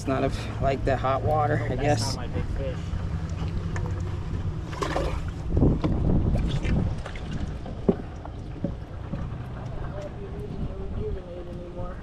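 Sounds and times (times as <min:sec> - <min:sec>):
low steady hum: 0:00.0 - 0:12.0
wind on microphone: 0:03.5 - 0:12.0.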